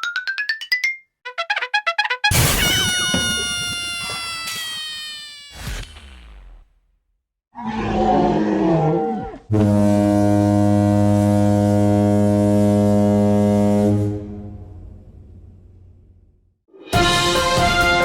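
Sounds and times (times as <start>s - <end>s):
growling roar: 7.6s - 9.5s
low steady horn blast: 9.5s - 15.0s.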